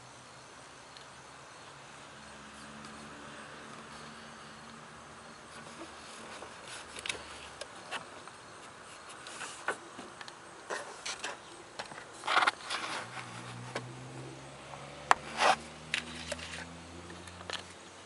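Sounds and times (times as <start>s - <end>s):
rustling scrapes: 5.5s - 9.8s, 12.1s - 13.8s, 15.2s - 16.7s
handling rubs and scrapes: 5.5s - 13.9s, 15.1s - 17.8s.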